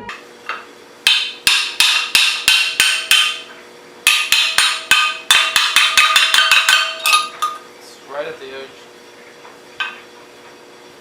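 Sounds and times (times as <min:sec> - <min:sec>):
hammer striking metal: 0:00.5 - 0:07.6.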